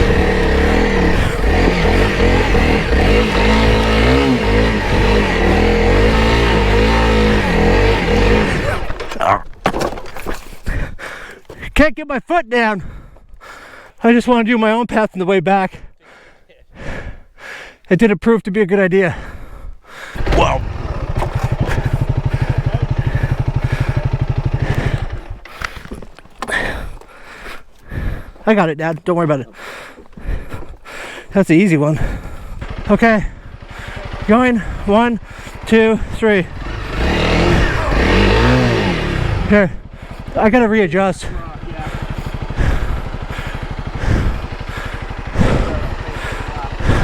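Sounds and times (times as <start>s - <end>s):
motorcycle engine revving: 0.0s - 9.4s, 20.2s - 26.8s, 32.0s - 47.0s.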